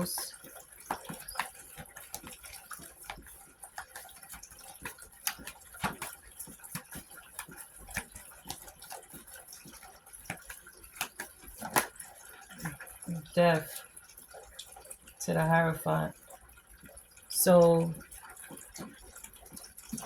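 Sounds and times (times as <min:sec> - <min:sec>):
cards being shuffled: 0:03.8 - 0:09.2, 0:10.3 - 0:11.9.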